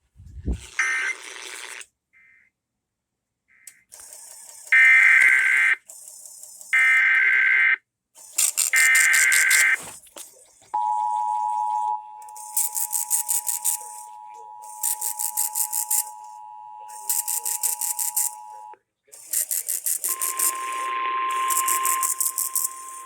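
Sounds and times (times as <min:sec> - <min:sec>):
screechy digital bursts: 0:03.8 - 0:07.6, 0:08.3 - 0:09.8, 0:12.2 - 0:23.0
two-tone attention signal: 0:10.8 - 0:18.8, 0:20.0 - 0:23.0.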